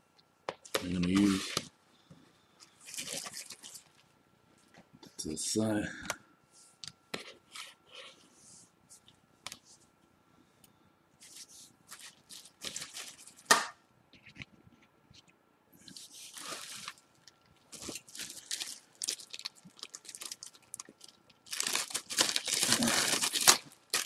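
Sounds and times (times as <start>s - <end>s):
packaging rustling and crinkling: 0.7s - 1.7s, 2.8s - 4.0s, 11.2s - 13.5s, 15.9s - 24.0s.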